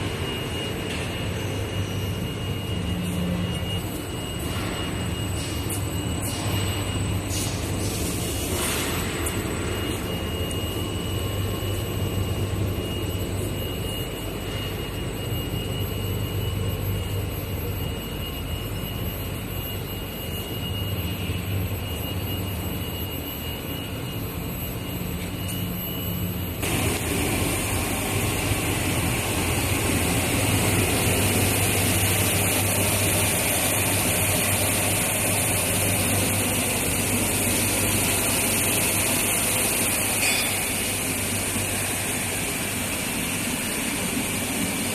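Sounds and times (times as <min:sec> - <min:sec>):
loud hissy machine noise: 0:00.0 - 0:15.8, 0:26.4 - 0:44.9
machinery hum with high whine: 0:00.0 - 0:44.9.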